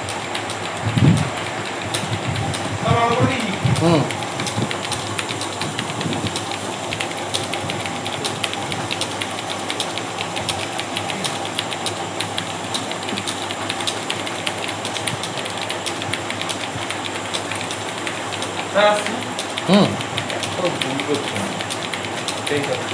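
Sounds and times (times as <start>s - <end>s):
typing on computer keyboard: 0.0s - 22.9s.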